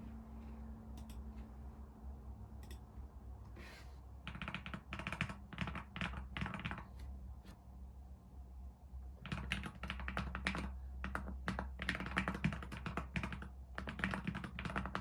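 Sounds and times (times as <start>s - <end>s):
keyboard typing: 4.2s - 6.9s, 9.2s - 15.0s.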